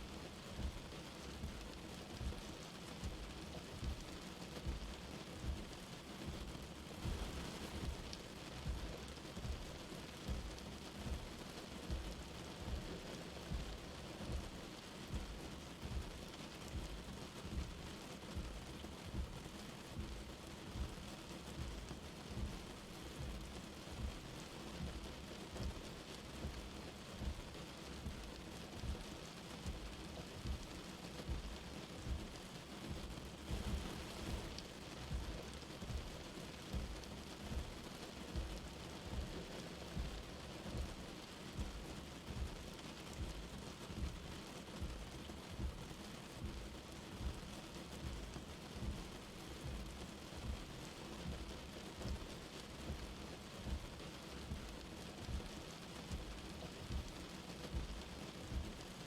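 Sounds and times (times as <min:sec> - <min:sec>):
light rain hissing: 0:00.0 - 0:59.0
soft low thump: 0:33.5 - 0:36.1.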